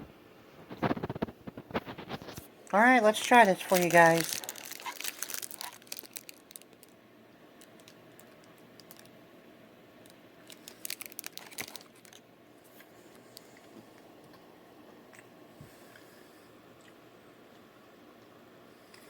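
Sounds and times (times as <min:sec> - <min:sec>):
wrapper crinkling: 0:00.8 - 0:07.0, 0:07.6 - 0:09.1, 0:10.0 - 0:12.2.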